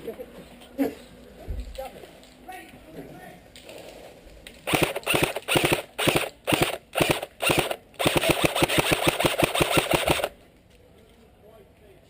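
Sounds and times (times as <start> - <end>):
airsoft gun firing bursts: 4.7 - 10.4.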